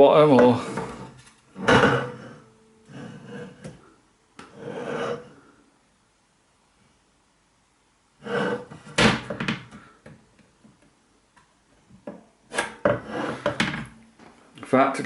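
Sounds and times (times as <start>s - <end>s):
metal panels knocking and scraping: 0.4s - 2.4s.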